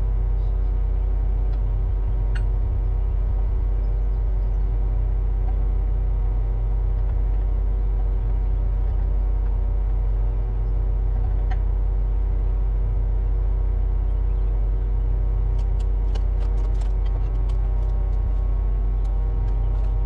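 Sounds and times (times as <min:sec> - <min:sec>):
diesel engine running: 0:00.0 - 0:20.0
sharp clicks and cracks: 0:15.6 - 0:20.0.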